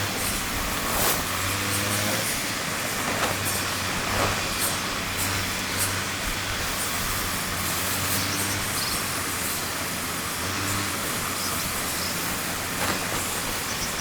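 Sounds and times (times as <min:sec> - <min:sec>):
machine hissing rush: 0:00.0 - 0:14.0.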